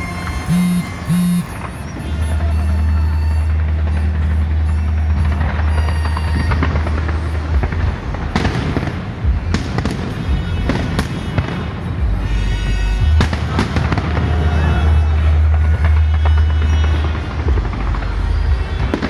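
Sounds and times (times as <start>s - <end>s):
loud music bass: 0.0s - 11.1s.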